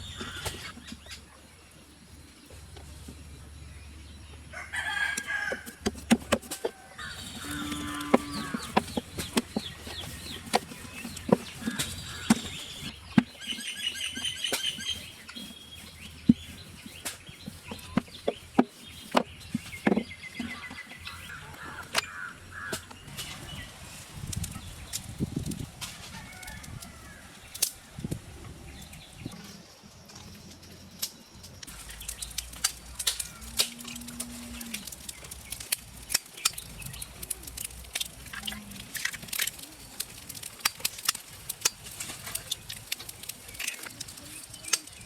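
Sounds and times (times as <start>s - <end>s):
chickens clucking: 4.6s - 22.9s
sharp clicks and knocks: 5.1s - 22.1s, 31.0s - 45.0s.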